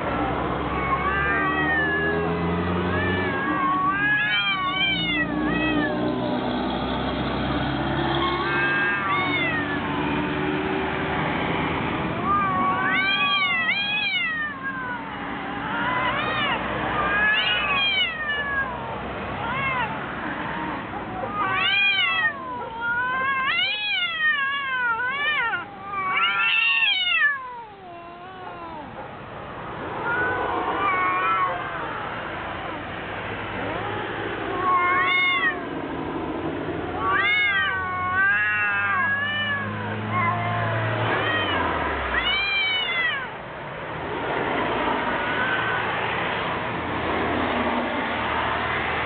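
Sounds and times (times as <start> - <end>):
cats yowling: 0.0 - 6.2, 7.8 - 11.4, 12.0 - 43.6, 44.5 - 46.9
cat growling: 0.6 - 6.1, 8.1 - 10.1, 12.1 - 43.4.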